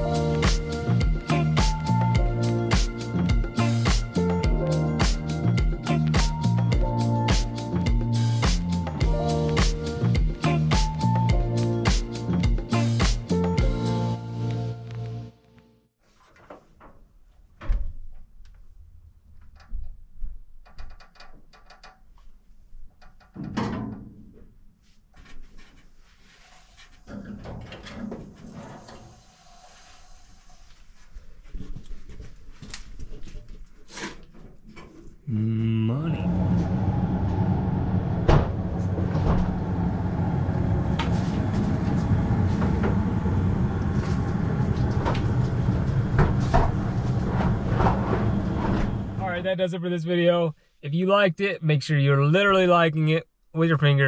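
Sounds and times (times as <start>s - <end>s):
machine humming: 35.3s - 49.3s
heavy thump: 38.2s - 39.6s.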